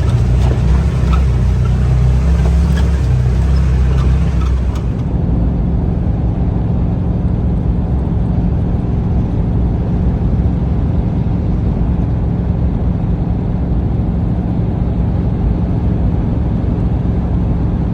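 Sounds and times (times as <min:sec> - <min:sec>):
utility vehicle engine running: 0:00.0 - 0:05.2.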